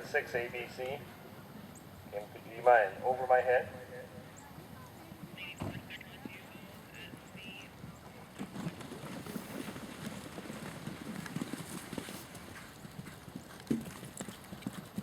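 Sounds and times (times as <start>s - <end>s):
horse hoofbeats galloping: 4.2s - 15.0s.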